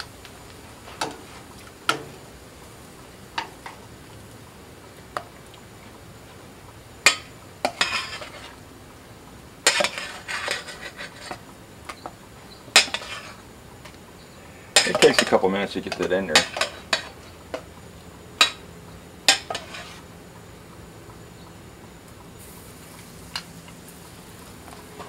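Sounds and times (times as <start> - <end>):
sausage patties sizzling: 0.0 - 25.0
metal utensils tapping on pan: 1.9 - 2.2, 7.0 - 8.2, 12.7 - 13.3, 14.8 - 17.7, 18.4 - 18.6, 19.2 - 19.7
metal utensils scraping griddle: 7.1 - 8.6, 9.6 - 11.4, 12.7 - 13.4, 14.5 - 17.4, 19.3 - 20.1.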